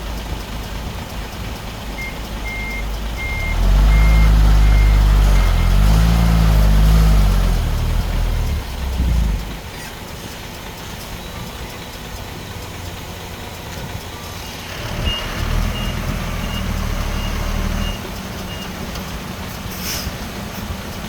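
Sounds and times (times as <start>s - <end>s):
heavy diesel engine running: 0.0s - 21.0s
reversing alarm beeps: 2.0s - 6.0s, 14.2s - 18.7s
brief hiss: 19.6s - 20.6s.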